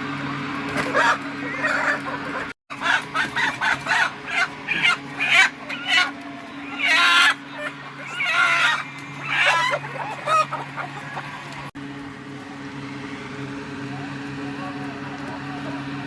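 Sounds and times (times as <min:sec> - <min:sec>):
steady low hum: 0:00.0 - 0:16.0
chickens squawking: 0:00.2 - 0:11.7.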